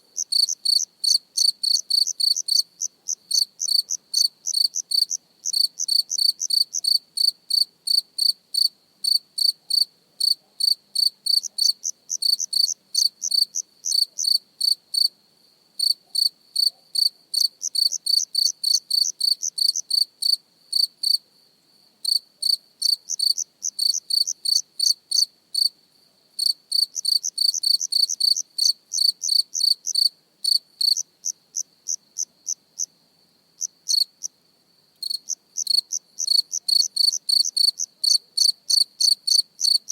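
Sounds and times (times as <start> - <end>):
cricket chirping: 0.0 - 39.9.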